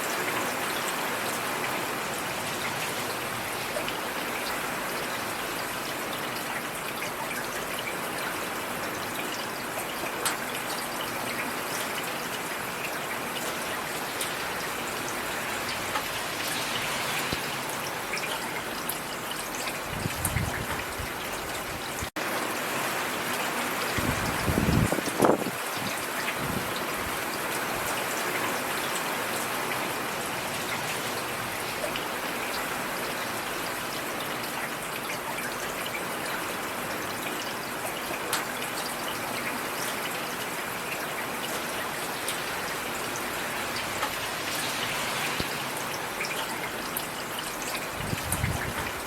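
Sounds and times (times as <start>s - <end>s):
steady rain falling: 0.0s - 49.0s
raindrops ticking on a surface: 5.2s - 22.2s, 30.6s - 49.0s.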